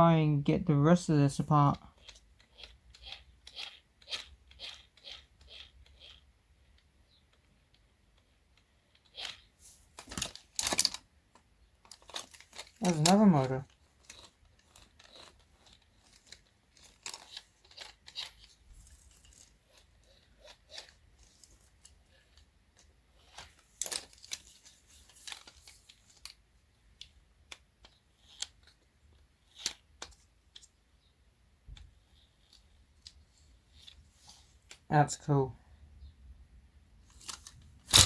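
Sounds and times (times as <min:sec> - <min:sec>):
plastic and metal parts clicking: 0:01.9 - 0:26.4, 0:37.1 - 0:38.0.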